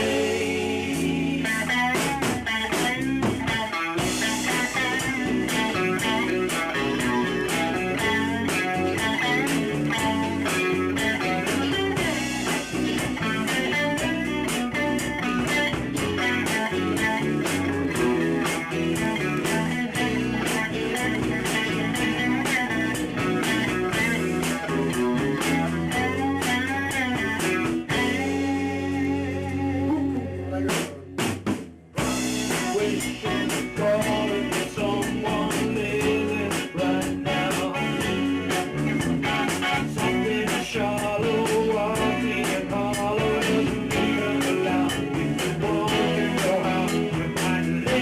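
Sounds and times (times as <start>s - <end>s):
drum hits: 0.0s - 28.3s, 30.7s - 35.0s
live band with guitar and drums: 0.0s - 48.0s.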